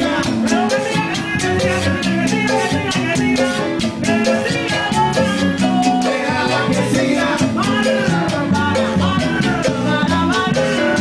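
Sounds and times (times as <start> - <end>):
drums and hand percussion: 0.0 - 11.0
salsa band playing: 0.0 - 11.0.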